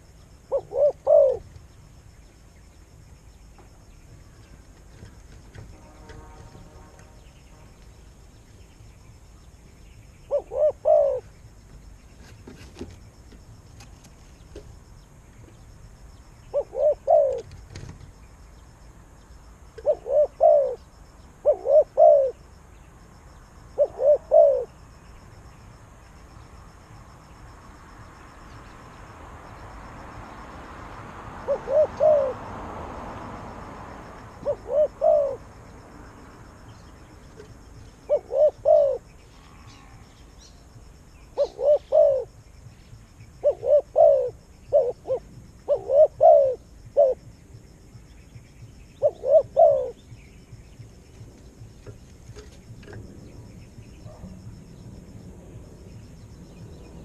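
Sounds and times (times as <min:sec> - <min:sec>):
dove cooing: 0:00.0 - 0:01.6, 0:10.3 - 0:11.5, 0:16.4 - 0:17.9, 0:19.8 - 0:22.4, 0:23.7 - 0:24.8, 0:31.4 - 0:32.4, 0:34.3 - 0:35.5, 0:37.3 - 0:40.4, 0:41.3 - 0:42.4, 0:43.4 - 0:47.3, 0:49.0 - 0:50.2.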